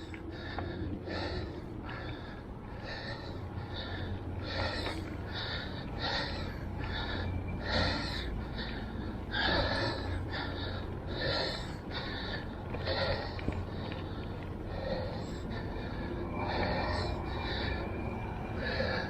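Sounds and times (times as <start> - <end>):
heavy rapid panting: 0.0 - 19.0.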